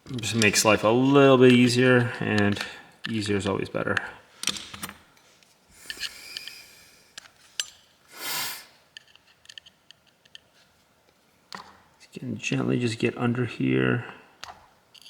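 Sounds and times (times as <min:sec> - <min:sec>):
short breathy hiss: 0:05.8 - 0:07.1, 0:08.1 - 0:08.8
tool clicks taps and scrapes: 0:08.9 - 0:10.7.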